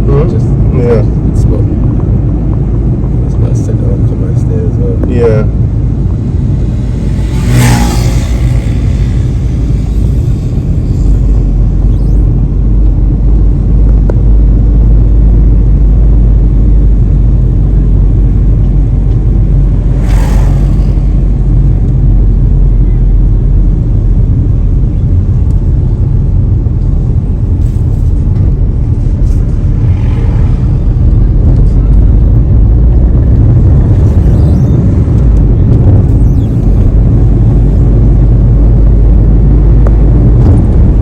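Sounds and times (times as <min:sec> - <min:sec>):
road and engine rumble in car: 0:00.0 - 0:41.0
brief rush of noise: 0:19.7 - 0:21.9.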